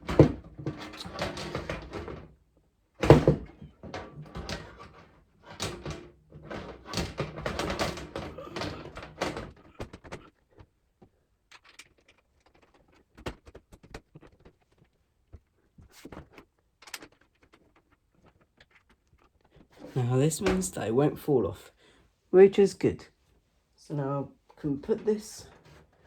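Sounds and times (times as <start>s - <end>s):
computer case parts knocking: 0.0s - 2.4s, 3.0s - 10.2s.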